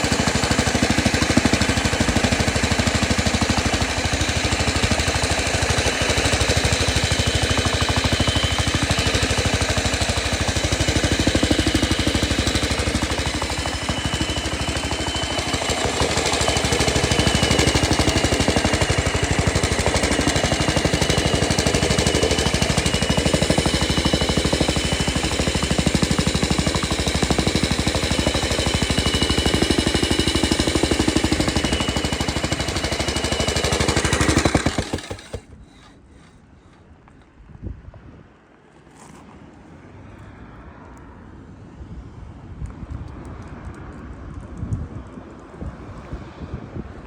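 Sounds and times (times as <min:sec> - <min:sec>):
steady high whine: 0:00.0 - 0:37.2
tamping rammer pounding: 0:00.0 - 0:37.2.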